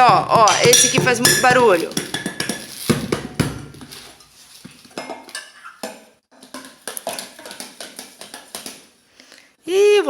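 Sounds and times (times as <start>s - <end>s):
child hitting drum kit: 0.0s - 3.8s.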